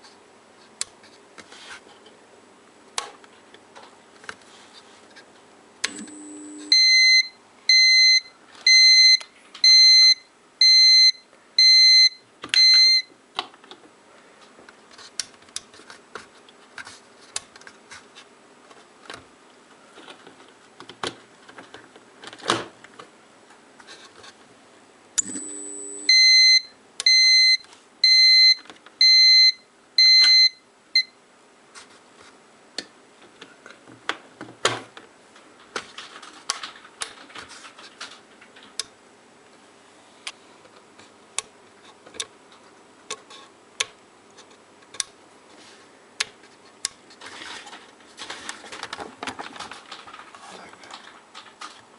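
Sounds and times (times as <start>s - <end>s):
manicure machine humming: 5.9s - 6.8s, 25.2s - 26.2s.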